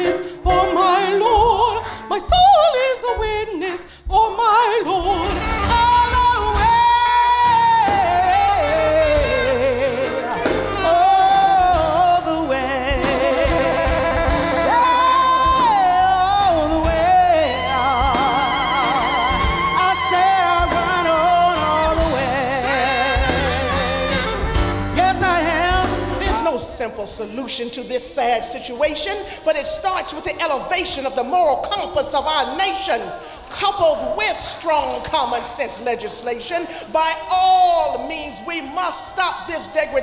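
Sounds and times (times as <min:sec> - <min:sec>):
high solo voice singing: 0:00.0 - 0:27.3
low instrumental accompaniment: 0:05.0 - 0:26.5.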